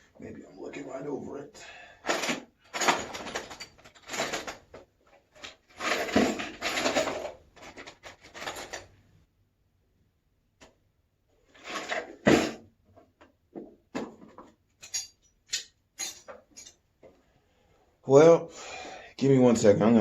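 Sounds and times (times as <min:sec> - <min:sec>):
tools rubbing and clattering: 0:02.0 - 0:09.0, 0:11.4 - 0:12.6, 0:14.1 - 0:16.8.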